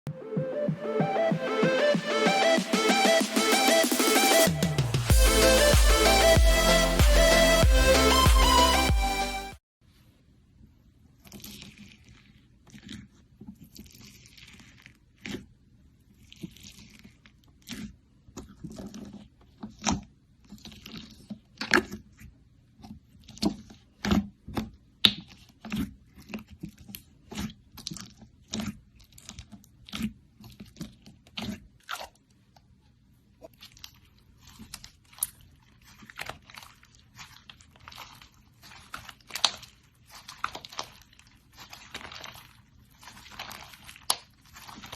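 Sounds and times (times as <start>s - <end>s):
slime squishing: 10.8s - 44.9s
slime popping and crackling: 33.5s - 44.9s.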